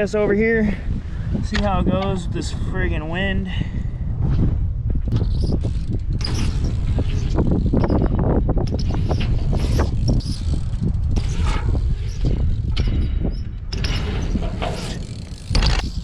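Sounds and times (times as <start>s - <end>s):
wind buffeting microphone: 0.0s - 16.0s
bike tyres rolling on ramp: 3.7s - 16.0s
bike knocks and rattles: 4.3s - 16.0s.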